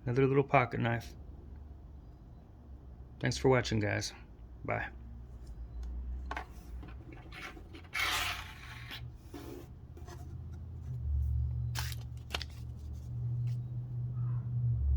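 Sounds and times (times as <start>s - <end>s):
rubbing scrape: 6.6s - 10.6s.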